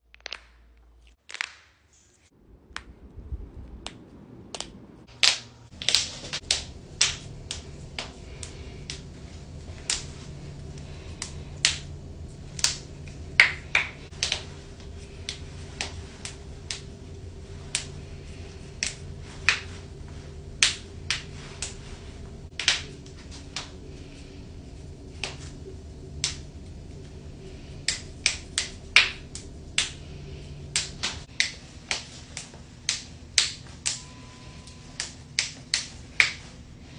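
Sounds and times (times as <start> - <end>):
knuckles cracking: 0.0 - 1.8, 3.7 - 34.0
steady low hum: 2.0 - 36.9.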